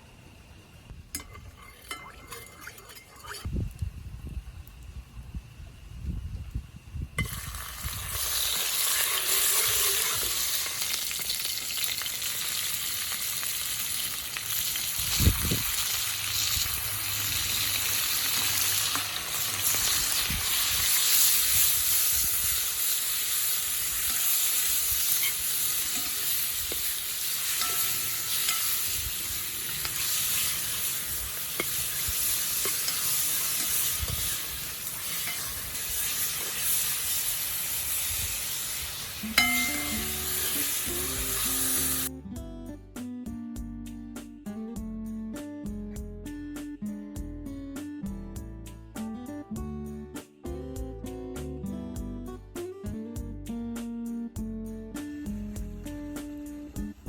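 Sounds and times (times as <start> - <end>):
food sizzling in a hot pan: 7.2 - 42.1.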